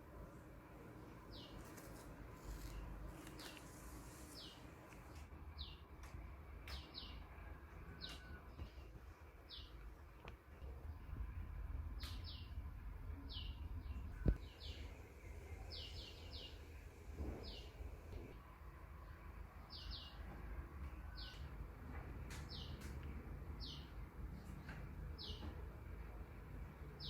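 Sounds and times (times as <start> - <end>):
small birds chirping: 1.3 - 6.0, 13.2 - 16.8, 17.4 - 17.8, 23.6 - 25.6
low background rumble: 5.1 - 19.7.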